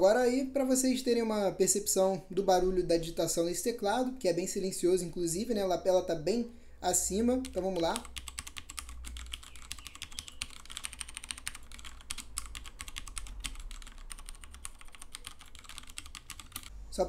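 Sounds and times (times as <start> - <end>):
fast typing on mechanical keyboard: 7.4 - 16.7.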